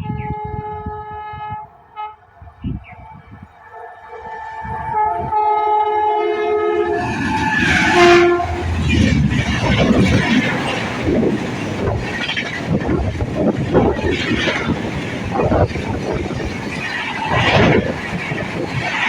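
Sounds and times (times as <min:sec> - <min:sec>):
train horn: 0:00.0 - 0:09.0
train rushing past: 0:02.2 - 0:19.0
wheels clattering on rails: 0:06.9 - 0:19.0.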